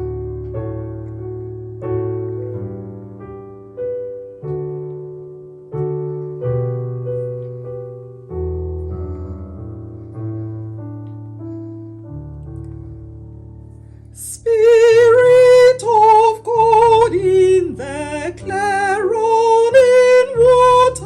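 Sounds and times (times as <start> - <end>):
piano chords ringing: 0.0 - 21.0.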